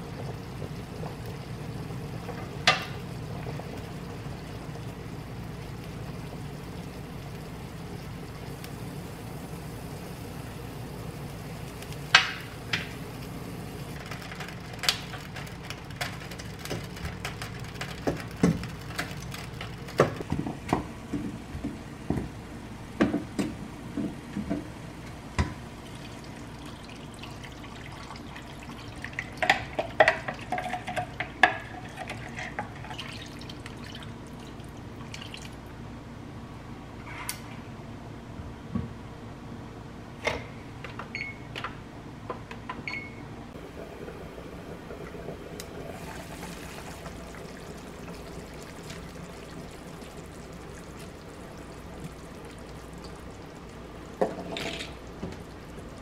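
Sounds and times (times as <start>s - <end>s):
running water: 25.7s - 35.7s, 43.6s - 56.0s.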